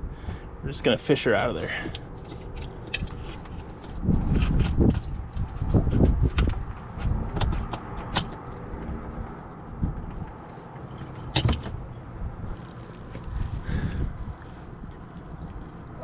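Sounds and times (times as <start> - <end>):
sharp clicks and knocks: 6.0 - 9.0
hose rubbing and rustling: 12.5 - 16.0.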